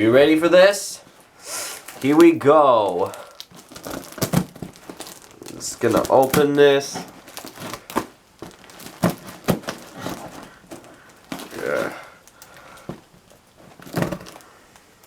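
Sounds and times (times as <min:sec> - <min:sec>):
cardboard rustling scrape: 0:03.6 - 0:12.0, 0:12.8 - 0:14.5.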